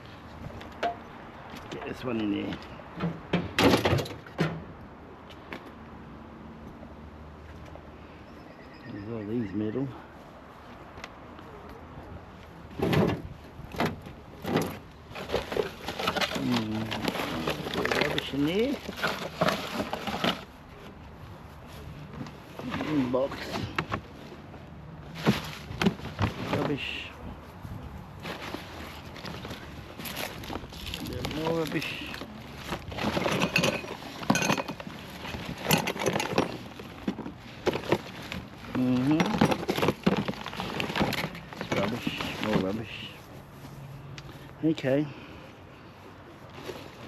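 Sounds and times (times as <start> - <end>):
loud knocks of junk shifted: 2.9 - 4.7, 12.7 - 20.5, 32.6 - 42.8
junk clinking and knocking: 32.9 - 38.4, 39.0 - 42.2.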